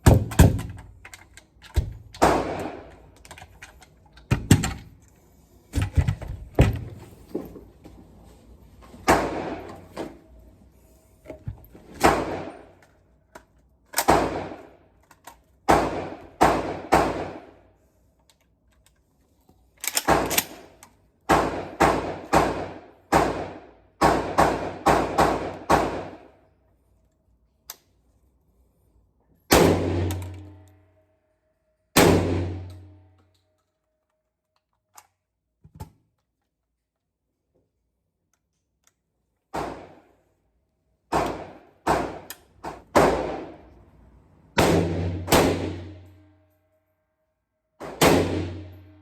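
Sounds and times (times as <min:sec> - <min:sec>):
gunshots with echoing tail: 0:44.6 - 0:46.0, 0:47.8 - 0:48.7.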